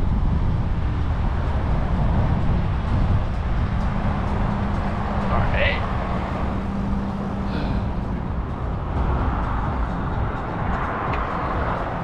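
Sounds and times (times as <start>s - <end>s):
road traffic: 0.0s - 12.0s
wind on microphone: 0.0s - 12.0s.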